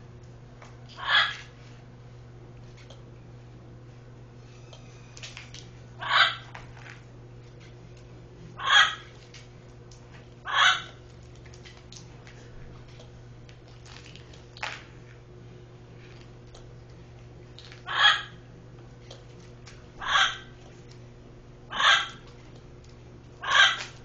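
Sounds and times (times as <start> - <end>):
steady low hum: 0.0 - 24.0
animal giving hoarse calls: 10.5 - 11.0, 20.0 - 20.6, 21.7 - 22.3, 23.4 - 24.0.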